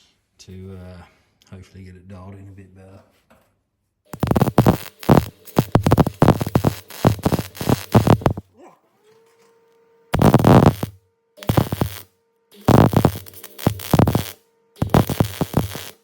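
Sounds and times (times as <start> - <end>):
welder arc crackling: 4.1 - 8.4, 10.2 - 16.0.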